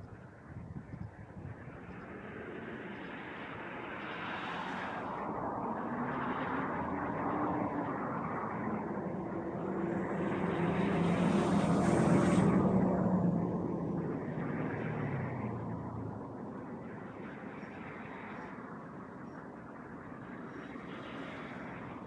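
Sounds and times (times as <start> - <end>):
passing vehicle engine: 2.0 - 17.4.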